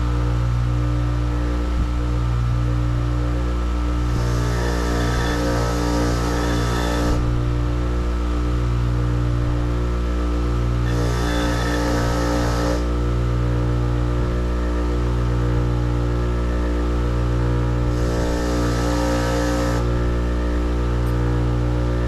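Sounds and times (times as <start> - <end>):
electric grinder motor hum: 4.0 - 7.9, 10.8 - 13.0, 17.8 - 20.8
metal grinding on wheel: 4.1 - 7.5, 10.9 - 12.9, 17.9 - 20.2.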